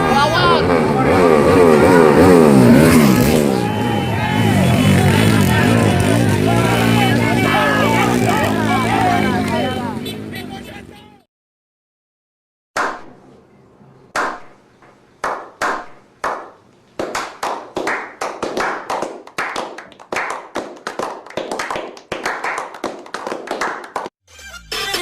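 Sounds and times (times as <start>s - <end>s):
sharp clap-like hits: 12.8s - 13.2s, 14.1s - 14.6s, 15.2s - 24.1s.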